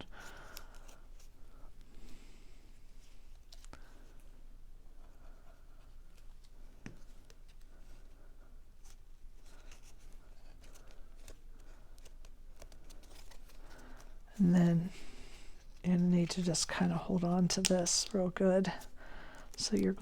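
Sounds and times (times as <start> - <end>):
cardstock rustling and scraping: 8.8 - 14.2, 15.6 - 20.0.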